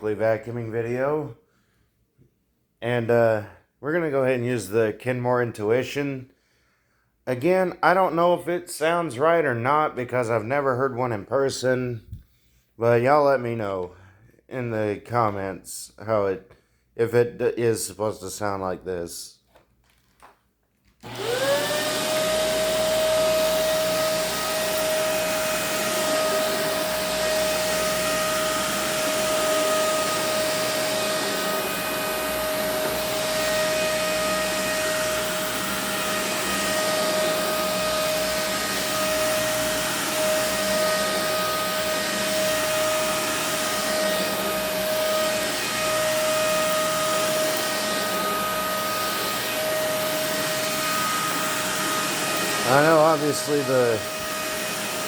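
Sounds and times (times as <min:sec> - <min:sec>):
vacuum cleaner motor whining: 0:21.0 - 0:55.0.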